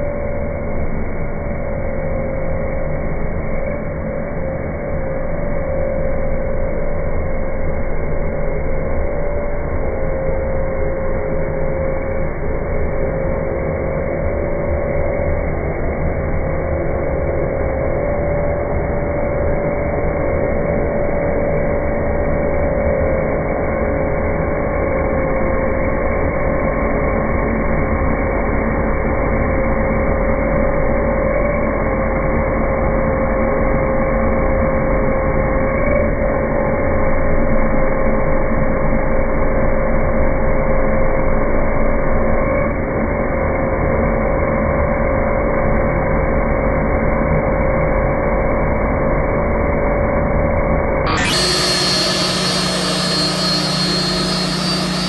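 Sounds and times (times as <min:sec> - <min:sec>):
cnc router whining: 0:51.1 - 0:55.0.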